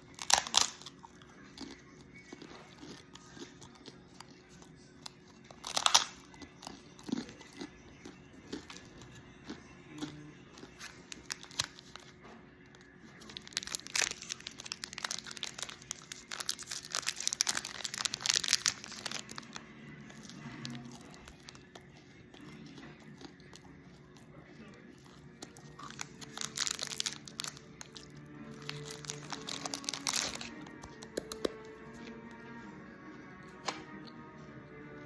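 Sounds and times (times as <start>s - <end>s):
crinkling and crackling: 10.6s - 23.7s, 25.0s - 31.4s.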